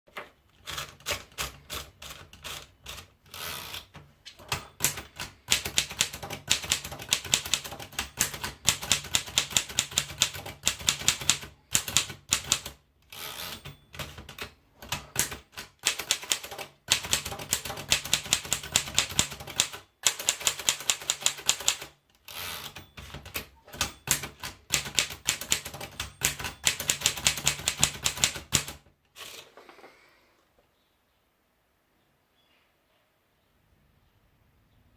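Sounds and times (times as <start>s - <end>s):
typewriter keystrokes clacking: 0.6s - 12.8s, 13.4s - 22.0s, 22.6s - 28.9s.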